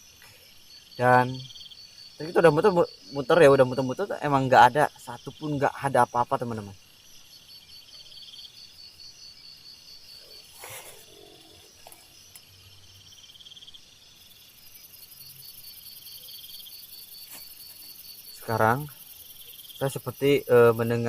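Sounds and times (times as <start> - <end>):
night insects trilling: 0.0 - 21.0
high thin buzz: 10.1 - 12.6.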